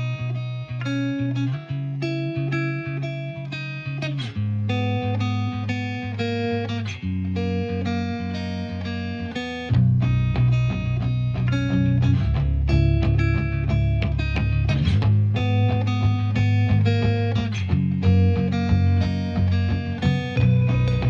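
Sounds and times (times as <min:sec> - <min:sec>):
plucked guitar melody: 0:00.0 - 0:21.0
steady bass line: 0:07.0 - 0:21.0.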